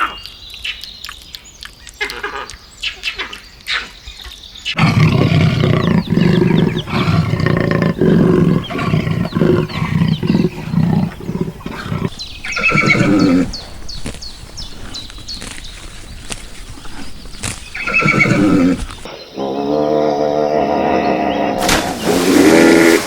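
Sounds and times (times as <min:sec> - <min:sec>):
large animal roaring: 0:04.8 - 0:13.5, 0:18.0 - 0:23.0.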